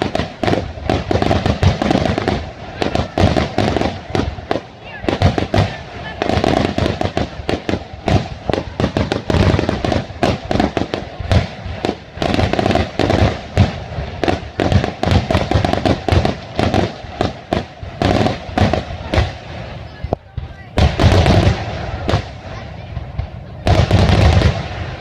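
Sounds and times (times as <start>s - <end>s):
fireworks bursts and bangs: 0.0s - 25.0s.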